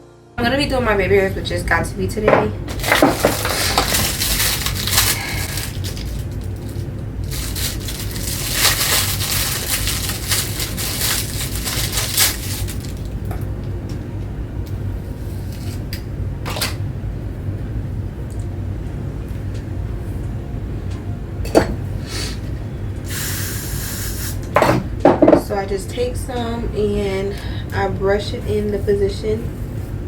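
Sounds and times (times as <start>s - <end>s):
steady low hum: 0.0s - 30.0s
scraping rustling handling noises: 2.6s - 13.2s.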